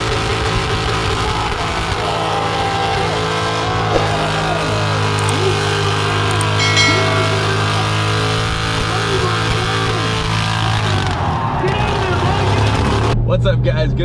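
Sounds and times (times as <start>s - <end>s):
music: 6.6s - 8.4s.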